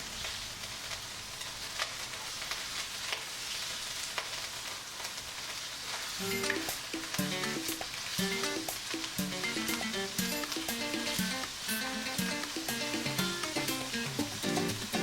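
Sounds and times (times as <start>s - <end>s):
meat sizzling in hot oil: 0.0s - 15.0s
background music: 6.2s - 15.0s.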